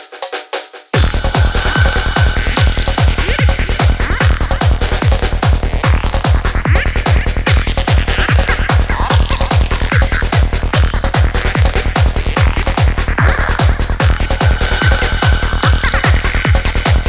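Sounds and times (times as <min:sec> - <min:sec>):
techno track: 0:00.0 - 0:17.0
deep kick drum thuds: 0:01.0 - 0:17.0.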